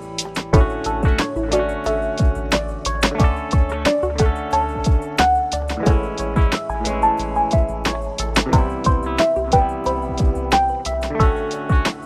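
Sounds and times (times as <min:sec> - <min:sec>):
background music with drum beat: 0:00.0 - 0:12.0.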